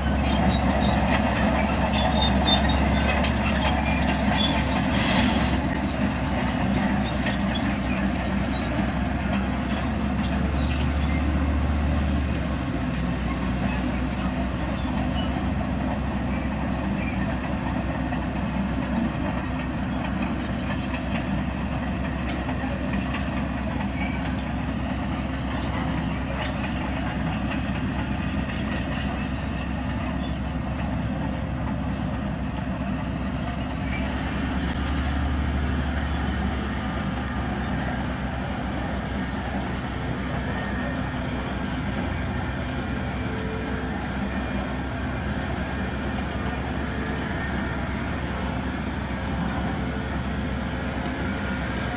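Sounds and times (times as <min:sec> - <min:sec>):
high-pitched squeaks: 0:00.0 - 0:11.4
earthmoving machinery engine rumble: 0:00.0 - 0:51.9.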